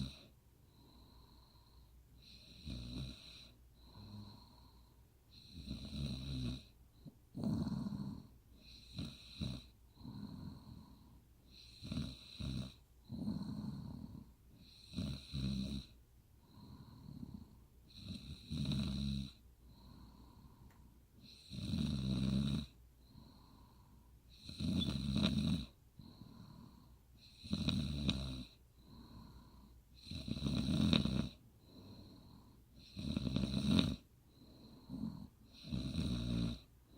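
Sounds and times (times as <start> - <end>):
faint breathing: 0.0 - 5.7, 9.6 - 11.8, 12.8 - 14.8, 15.9 - 18.0, 19.3 - 21.5, 22.7 - 24.4, 25.7 - 27.4, 28.5 - 30.0, 31.4 - 33.0, 34.0 - 35.7
woman snoring: 0.0 - 36.7.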